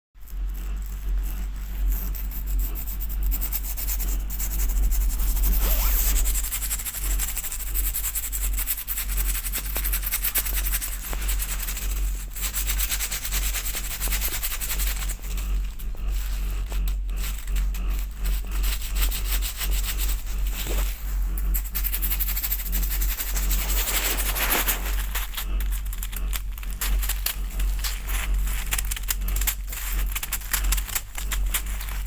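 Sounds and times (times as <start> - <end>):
steady low rumble: 2.6 - 7.8
snow crunching and scraping: 5.5 - 6.4, 23.4 - 25.1.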